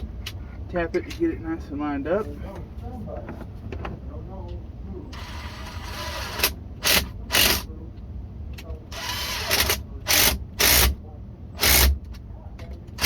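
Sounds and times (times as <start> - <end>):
ratchet tool clicking: 5.8 - 7.6, 9.0 - 11.0, 11.6 - 12.0.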